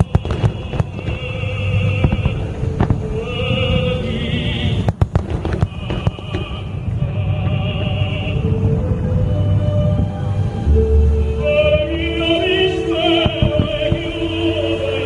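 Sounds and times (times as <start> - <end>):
fireworks bangs: 0.0 - 10.2, 13.0 - 14.7
low rumble: 0.0 - 15.0
music over loudspeakers: 0.0 - 15.0.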